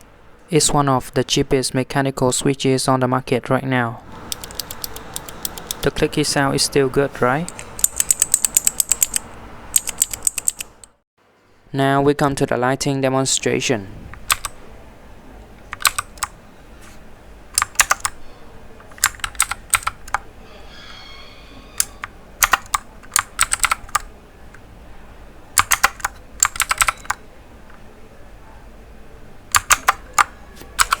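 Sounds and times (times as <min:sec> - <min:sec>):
mechanical keyboard clicking: 0:04.3 - 0:05.9, 0:07.5 - 0:11.0, 0:14.2 - 0:14.6, 0:15.7 - 0:16.4, 0:17.5 - 0:18.2, 0:18.8 - 0:20.2, 0:21.8 - 0:24.6, 0:25.6 - 0:27.2, 0:29.5 - 0:31.0.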